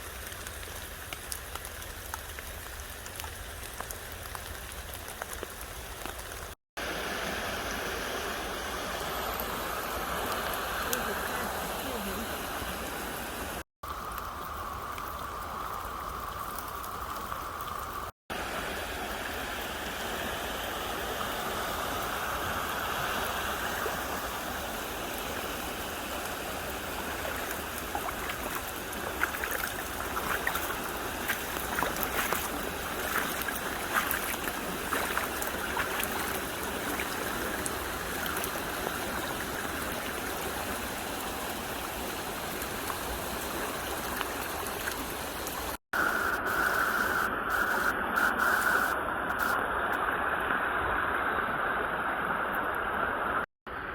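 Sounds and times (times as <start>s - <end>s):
river water rushing: 6.8s - 13.6s, 18.3s - 45.8s.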